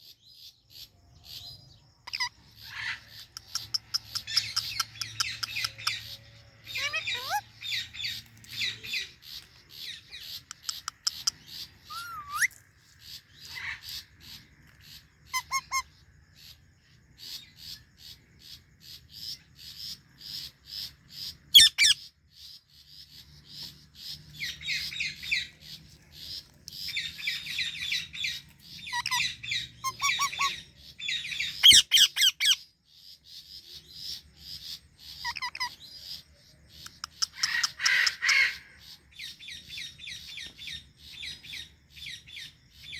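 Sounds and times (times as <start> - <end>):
harsh parrot squawks: 2.1 - 6.0, 6.7 - 7.5, 10.7 - 12.5, 15.3 - 15.8, 35.2 - 35.8, 37.2 - 38.7
parakeets chirping: 2.1 - 16.0, 19.2 - 22.0, 23.1 - 32.6, 34.0 - 42.9.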